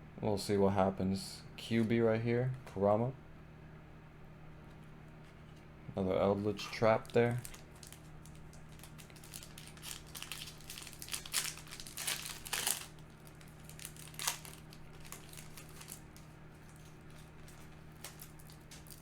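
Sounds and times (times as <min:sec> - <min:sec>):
foil wrapper crinkling: 0:06.4 - 0:19.0.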